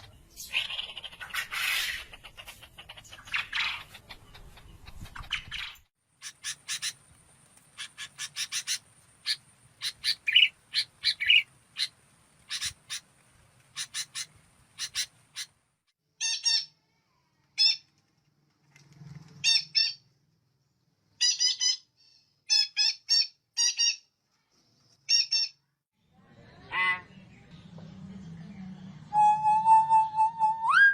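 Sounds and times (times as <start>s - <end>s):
songbird chirps: 2.3s - 15.6s, 24.6s - 30.9s.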